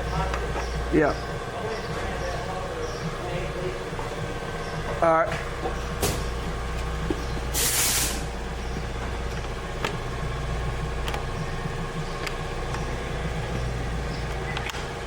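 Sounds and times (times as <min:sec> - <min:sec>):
low mechanical hum: 0:00.0 - 0:15.0
air hissing: 0:07.5 - 0:08.4.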